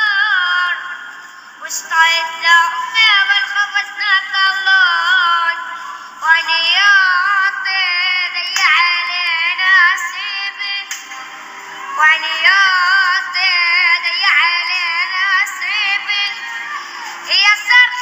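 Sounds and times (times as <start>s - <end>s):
high-pitched voice singing: 11.8s - 18.0s.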